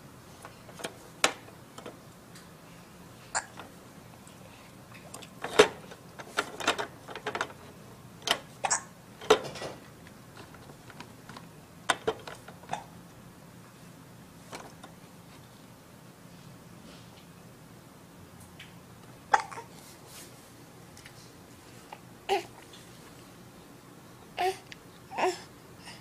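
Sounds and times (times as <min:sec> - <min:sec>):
plastic toys clacking and rattling: 0:05.1 - 0:08.5, 0:09.2 - 0:12.8.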